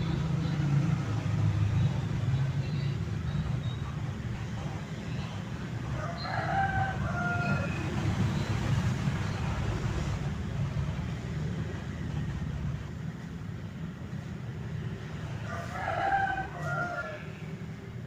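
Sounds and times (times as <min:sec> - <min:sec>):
rooster crowing: 0:05.9 - 0:08.4, 0:15.3 - 0:17.6.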